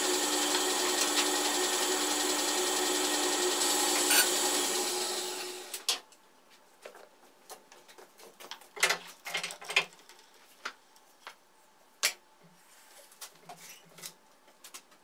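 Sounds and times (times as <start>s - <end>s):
planer motor winding down: 0.0s - 5.8s.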